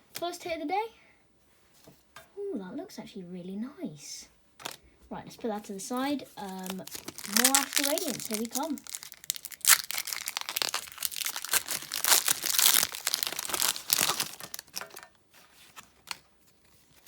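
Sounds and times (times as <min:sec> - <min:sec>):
foil wrapper crinkling: 0:05.6 - 0:17.0.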